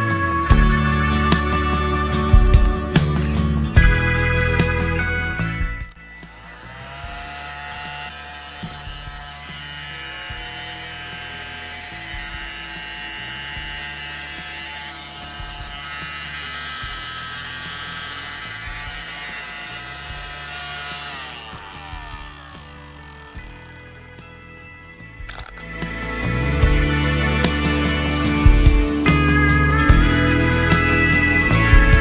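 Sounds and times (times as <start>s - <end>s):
handheld vacuum cleaner motor whine: 3.8s - 24.6s, 25.2s - 25.7s.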